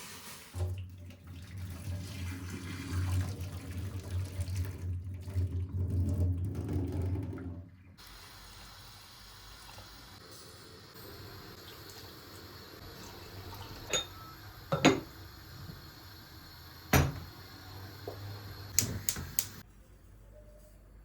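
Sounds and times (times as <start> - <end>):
kitchenware knocking and clinking: 13.8 - 15.1, 16.9 - 17.3.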